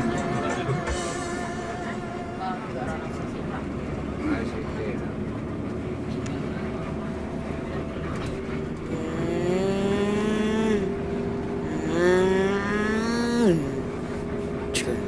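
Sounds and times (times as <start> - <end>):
multi-trumpet bus horn chord: 0.0 - 4.6.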